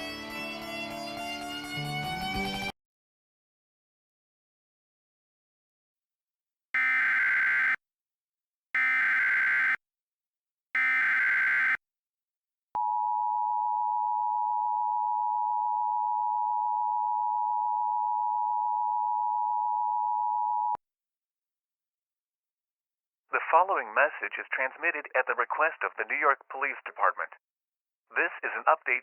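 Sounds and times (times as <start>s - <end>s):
buzzy digital data bursts: 6.8s - 7.8s, 8.8s - 9.8s, 10.8s - 11.8s.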